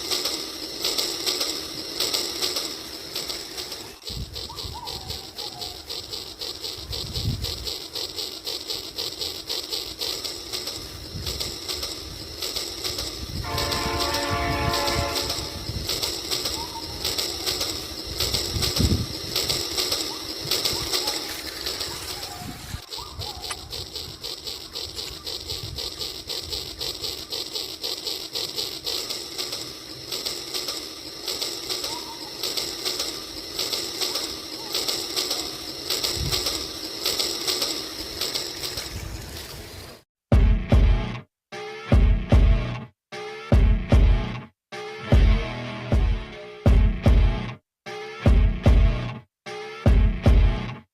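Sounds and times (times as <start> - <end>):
toy train clacking: 0.0 - 40.0
toy train horn: 13.0 - 18.5.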